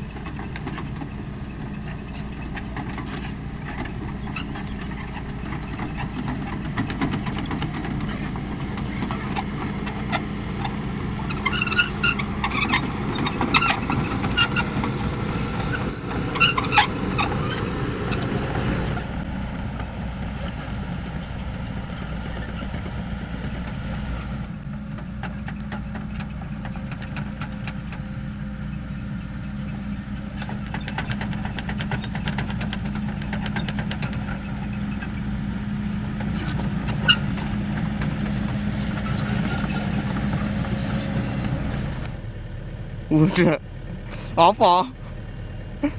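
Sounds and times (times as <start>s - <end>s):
excavator diesel engine running: 0.0s - 45.9s.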